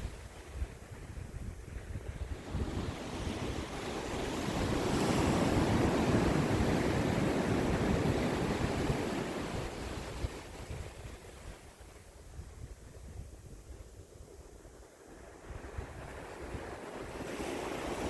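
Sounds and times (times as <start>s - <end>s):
wave breaking on shore: 2.6s - 11.0s.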